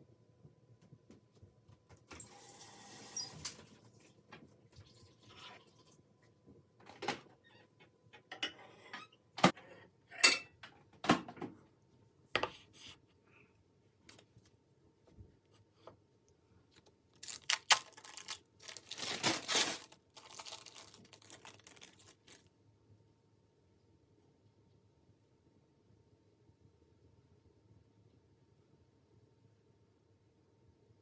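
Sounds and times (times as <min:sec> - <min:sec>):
dishes and cutlery clinking: 0:09.6 - 0:10.7
scraping and rustling: 0:18.0 - 0:22.4.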